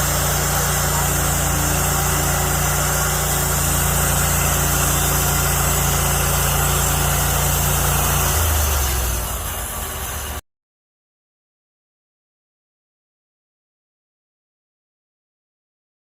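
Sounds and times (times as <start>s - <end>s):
engine idling: 0.0s - 10.4s.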